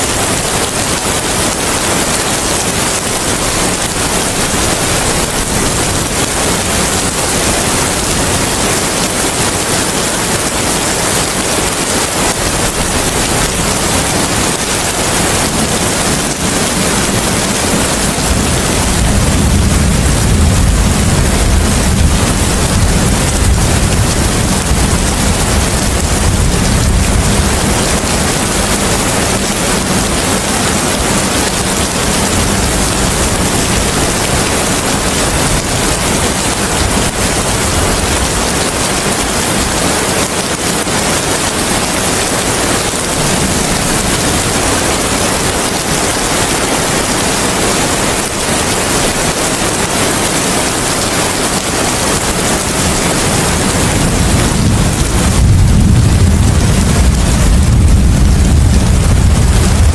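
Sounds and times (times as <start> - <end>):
steady rain hiss: 0.0 - 59.9
low rumble: 54.1 - 59.9.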